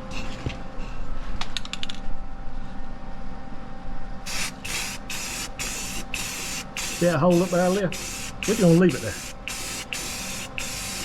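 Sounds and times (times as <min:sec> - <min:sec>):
aerosol spray can hissing: 0:04.3 - 0:11.0.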